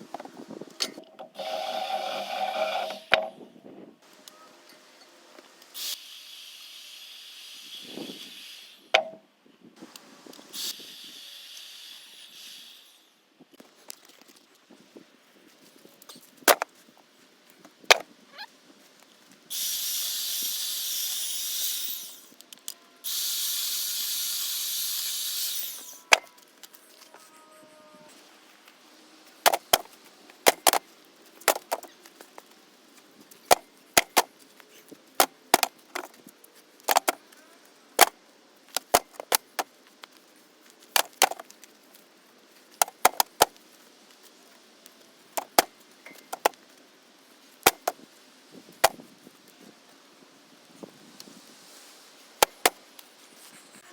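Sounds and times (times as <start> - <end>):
hissing power tool: 1.4 - 3.2, 5.6 - 8.9, 19.5 - 22.4, 23.0 - 26.2.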